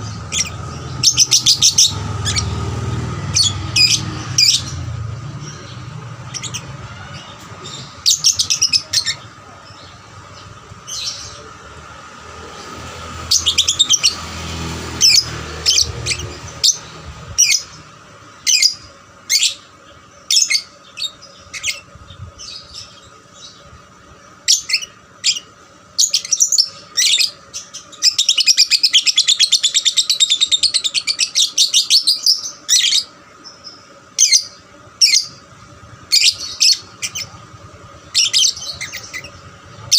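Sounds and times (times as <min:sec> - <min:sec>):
lovebird chirping: 0:00.0 - 0:11.5, 0:38.0 - 0:39.9.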